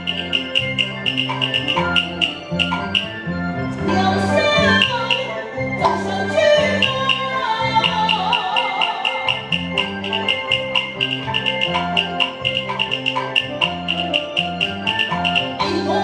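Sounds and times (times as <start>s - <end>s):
sharp percussion strokes: 0.0s - 3.2s, 8.0s - 15.6s
opera band instrumental music: 0.0s - 16.0s.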